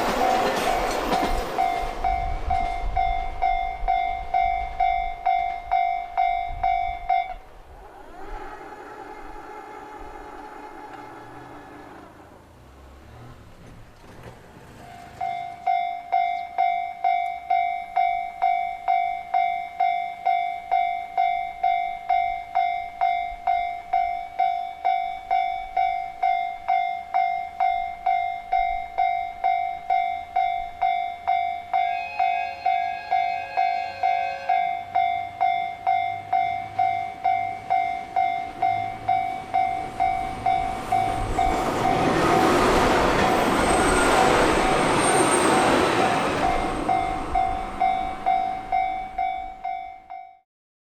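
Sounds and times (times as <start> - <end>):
level crossing warning bell: 0.0 - 7.5, 14.7 - 50.4
rumble of approaching train: 0.0 - 50.4
train horn: 7.8 - 12.3, 31.8 - 35.0.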